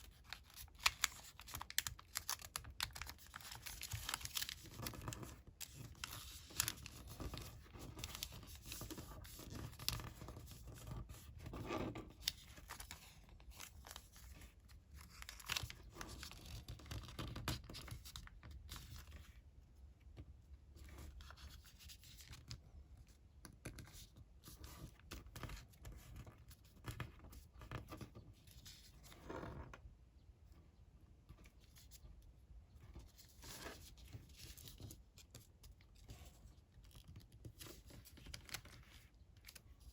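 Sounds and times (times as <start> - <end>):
sharp paper clicks: 0.0 - 10.2
paper rustling and crinkling: 0.0 - 19.3, 32.9 - 39.9.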